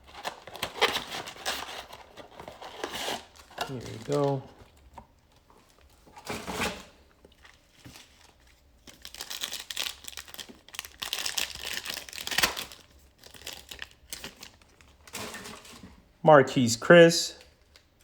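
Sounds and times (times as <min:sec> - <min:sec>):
foil wrapper crinkling and tearing: 0:00.0 - 0:04.7, 0:07.3 - 0:15.8.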